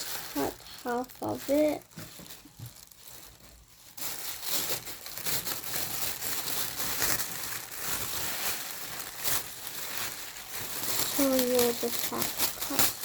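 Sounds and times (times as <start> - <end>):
plastic bag crinkling: 0.0 - 13.0
scissors cutting plastic: 4.0 - 13.0.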